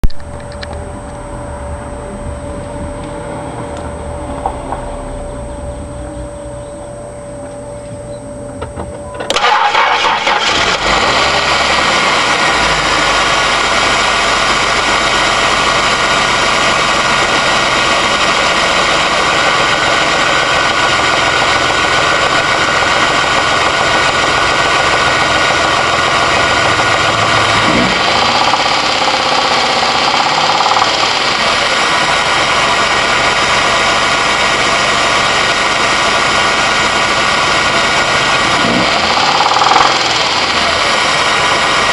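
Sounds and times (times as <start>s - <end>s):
car engine starting and knocking: 9.2s - 41.9s.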